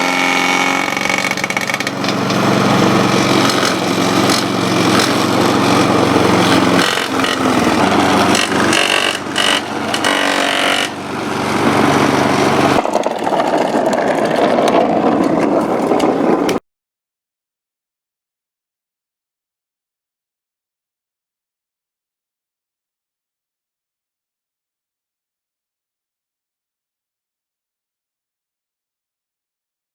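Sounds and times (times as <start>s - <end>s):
lawn mower engine running: 0.0s - 16.6s.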